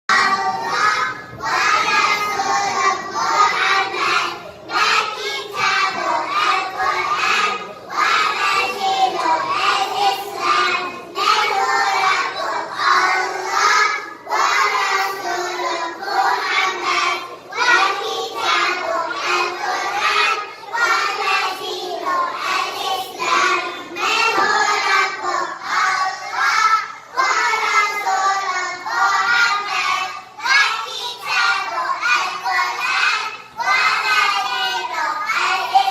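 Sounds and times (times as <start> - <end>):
child singing: 0.1 - 35.9.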